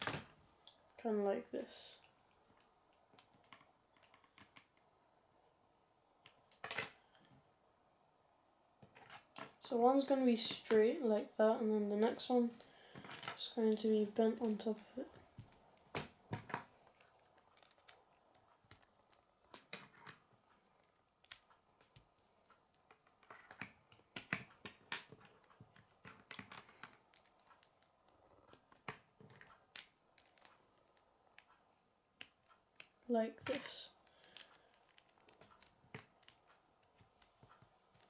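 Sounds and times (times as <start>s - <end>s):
plastic pieces clicking and snapping: 2.0s - 4.8s, 15.9s - 22.0s, 22.8s - 31.6s, 32.2s - 38.0s.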